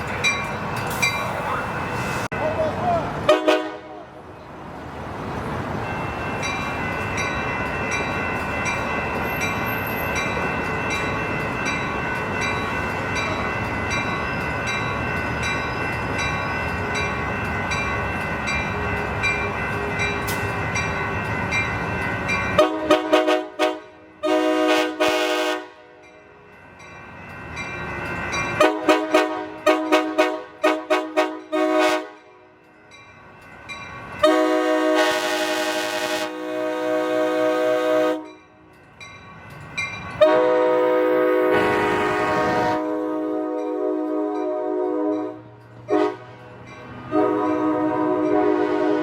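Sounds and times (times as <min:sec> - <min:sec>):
train wheels and engine: 0:00.0 - 0:49.0
train horn toots: 0:03.2 - 0:04.1, 0:22.6 - 0:26.0, 0:28.6 - 0:32.3, 0:34.2 - 0:38.4, 0:40.2 - 0:46.4, 0:47.1 - 0:49.0.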